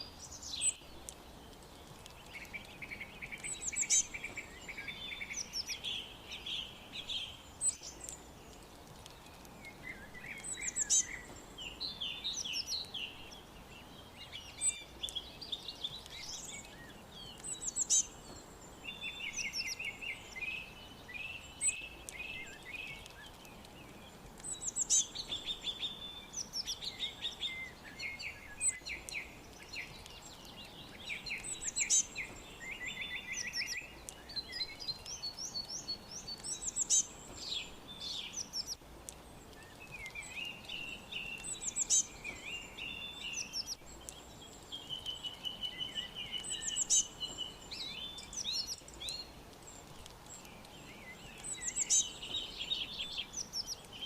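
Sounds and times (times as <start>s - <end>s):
faint steady hiss: 0.0s - 54.0s
songbirds chirping and singing: 0.0s - 54.0s.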